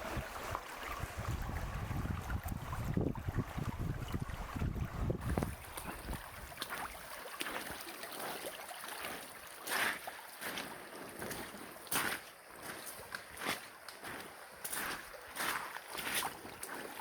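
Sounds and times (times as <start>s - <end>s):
wind buffeting microphone: 0.0s - 6.6s
water rushing bursts: 0.0s - 12.0s
stream water running: 0.0s - 17.0s.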